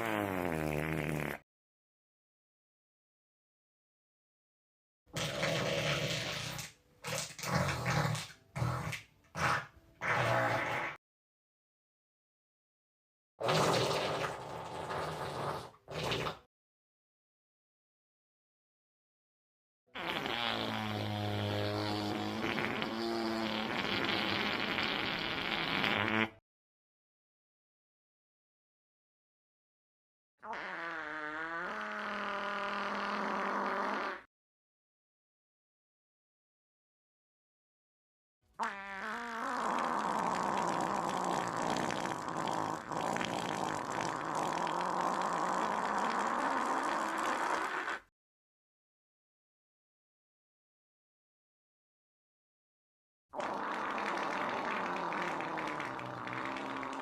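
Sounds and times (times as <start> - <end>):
long fart sound: 0.0 - 1.4, 5.1 - 11.0, 13.4 - 16.5, 19.9 - 26.4, 30.4 - 34.3, 38.5 - 48.1, 53.3 - 57.0.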